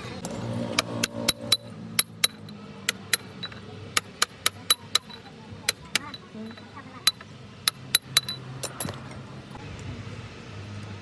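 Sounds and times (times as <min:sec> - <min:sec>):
hammer tapping on metal: 0:00.2 - 0:09.0.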